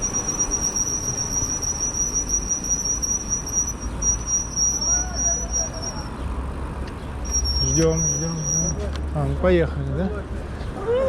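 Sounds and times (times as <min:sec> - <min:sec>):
high-pitched whine: 0:00.0 - 0:06.1, 0:07.3 - 0:08.9.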